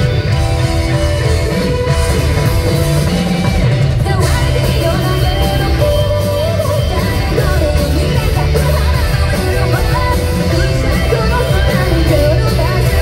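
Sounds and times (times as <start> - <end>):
electric guitar: 0.0 - 13.0
heavy drums: 0.0 - 13.0
live rock band: 0.0 - 13.0
woman singing: 3.9 - 13.0.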